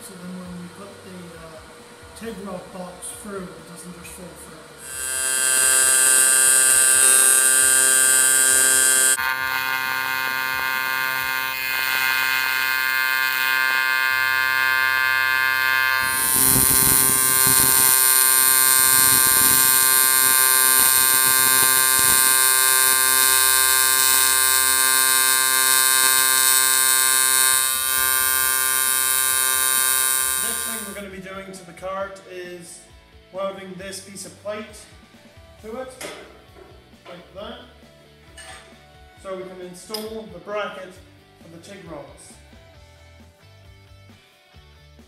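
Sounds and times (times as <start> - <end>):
welding arc buzzing: 4.8 - 31.0.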